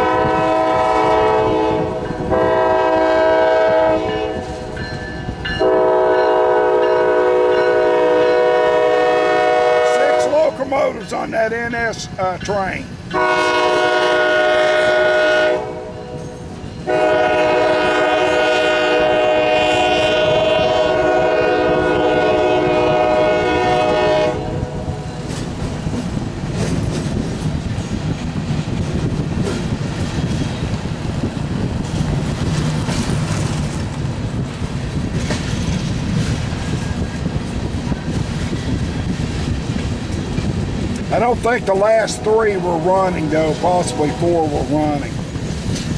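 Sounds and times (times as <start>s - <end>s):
locomotive air horn blowing: 0.0s - 4.8s, 5.6s - 10.6s, 13.1s - 25.1s, 42.1s - 45.0s
train wheels clacking on rails: 16.2s - 45.9s.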